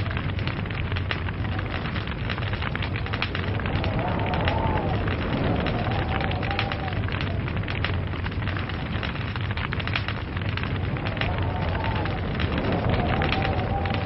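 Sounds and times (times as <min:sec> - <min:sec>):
logs crackling and popping: 0:00.0 - 0:14.0
low rumble of fire: 0:00.0 - 0:14.0.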